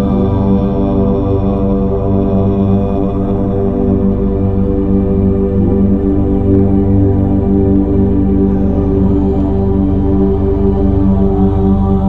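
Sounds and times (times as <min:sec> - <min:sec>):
ambient drone music: 0:00.0 - 0:12.0.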